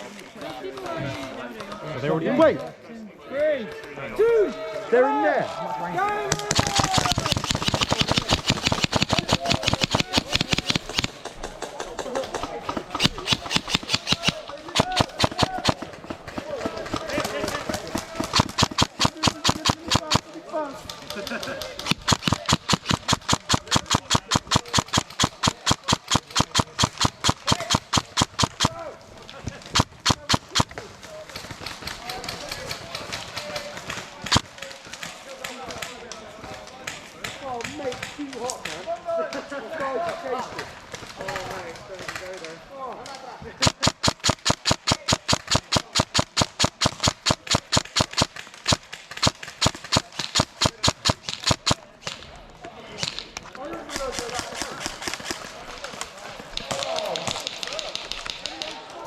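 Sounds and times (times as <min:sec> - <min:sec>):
airsoft gun rapid firing: 0:06.3 - 0:20.3, 0:21.0 - 0:28.8, 0:29.7 - 0:30.8, 0:31.4 - 0:34.6, 0:43.6 - 0:52.2, 0:53.9 - 0:58.8
running footsteps: 0:06.3 - 0:28.8, 0:43.6 - 0:51.8.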